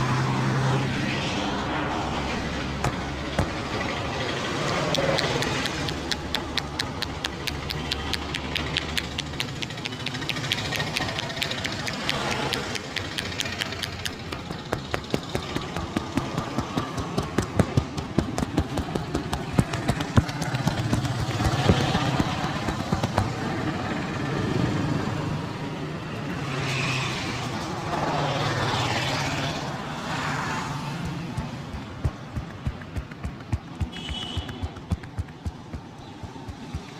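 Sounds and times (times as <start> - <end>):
street traffic: 0.0 - 36.9
vehicle engine passing: 0.0 - 36.9
hand slaps and taps on head: 4.9 - 20.3, 31.0 - 36.9.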